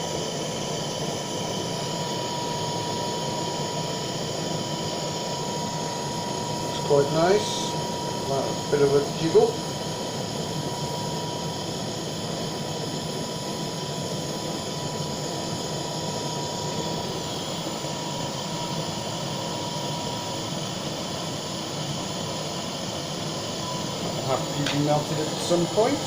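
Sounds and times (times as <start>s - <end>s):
blowtorch flame hissing: 0.0s - 26.0s
thin steady whistle: 0.0s - 26.0s.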